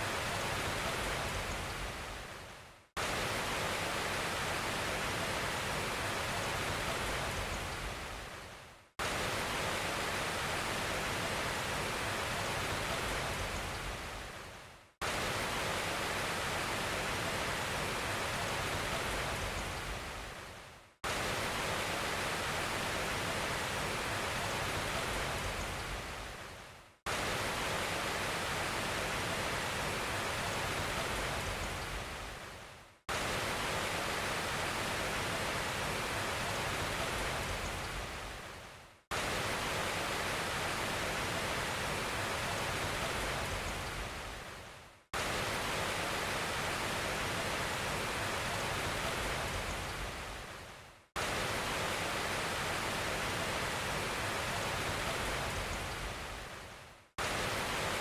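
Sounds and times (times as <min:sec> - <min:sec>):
hiss of rushing water: 0:00.0 - 0:02.4, 0:21.0 - 0:58.0.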